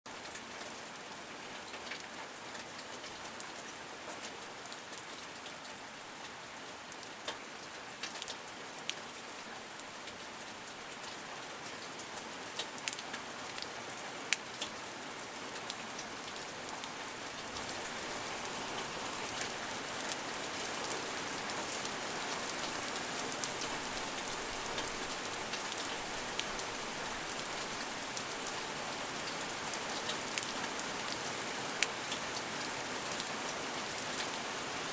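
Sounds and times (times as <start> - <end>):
raindrops ticking: 15.5 - 31.0
rain hiss: 15.5 - 34.9.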